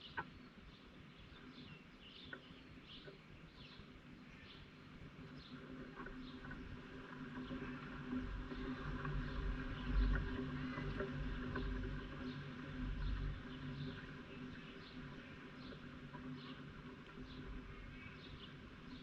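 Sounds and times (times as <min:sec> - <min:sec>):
engine humming: 0:05.7 - 0:19.0.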